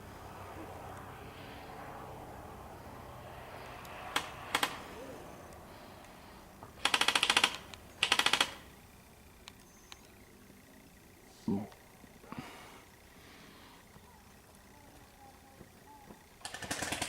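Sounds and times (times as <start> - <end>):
airsoft gun full-auto bursts: 4.1 - 4.8, 6.8 - 8.8, 16.4 - 17.0.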